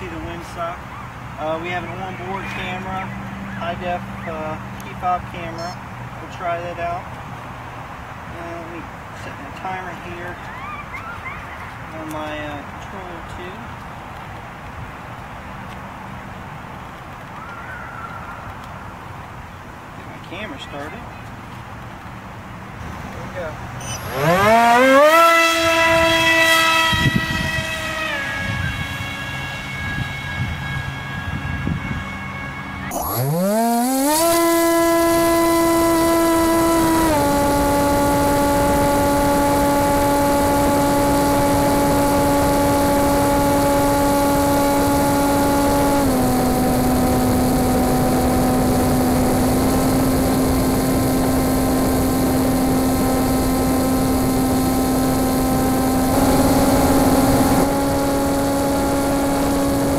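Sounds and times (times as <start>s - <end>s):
model plane motor whining: 23.2s - 59.9s.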